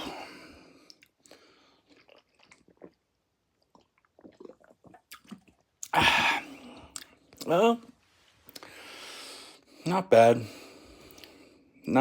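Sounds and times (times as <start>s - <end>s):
sipping and swallowing: 0.8s - 7.5s
wet mouth clicks: 3.7s - 6.0s, 6.9s - 7.5s.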